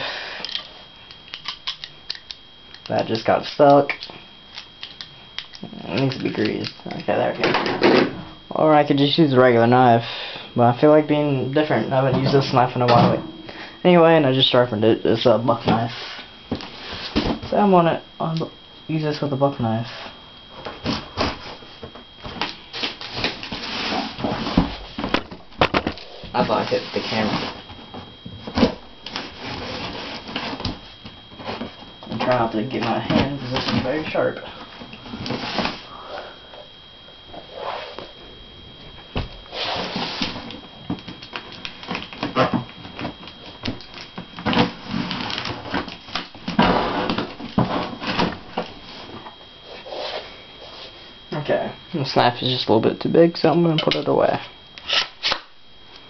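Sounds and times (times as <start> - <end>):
knife cutting packing tape: 54.8 - 55.5.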